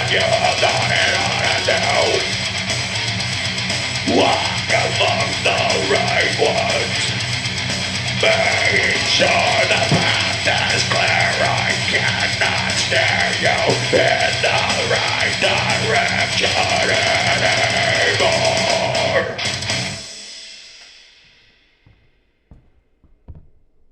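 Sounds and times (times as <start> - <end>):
heavy metal music: 0.0 - 21.2.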